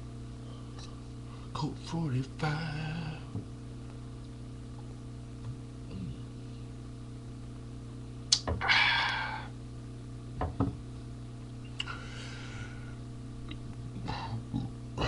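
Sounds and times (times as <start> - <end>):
steady low hum: 0.0 - 15.0
small knocks: 10.4 - 10.8.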